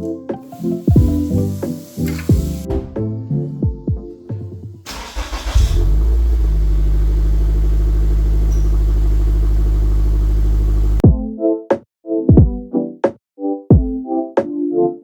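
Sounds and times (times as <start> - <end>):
car engine cranking: 4.9 - 11.0
car engine running steadily: 4.9 - 11.0.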